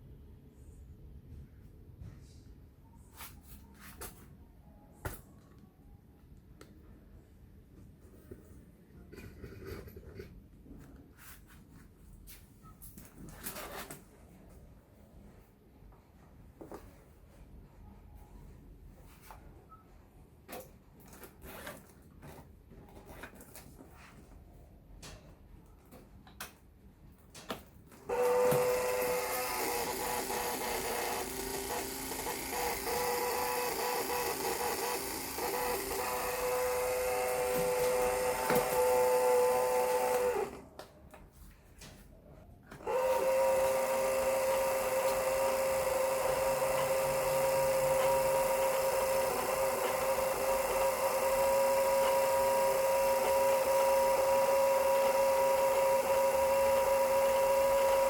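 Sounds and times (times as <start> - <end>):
small electric motor whining: 28.1 - 40.6, 42.8 - 58.0.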